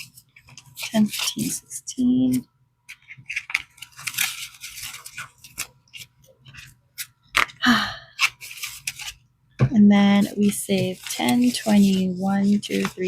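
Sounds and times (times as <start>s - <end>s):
paper bills rustling: 0.0s - 1.7s, 2.9s - 7.5s, 8.2s - 9.2s, 10.0s - 13.0s
small clicks and scrapes: 2.9s - 7.1s.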